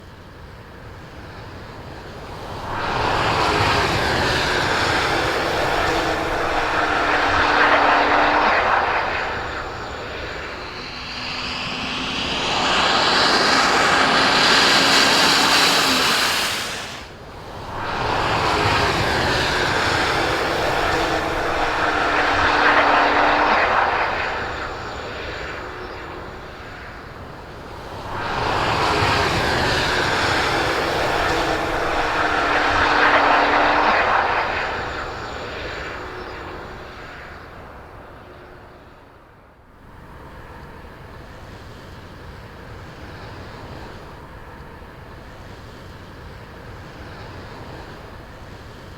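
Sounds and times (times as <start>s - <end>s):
loud rushing noise: 2.5s - 24.2s.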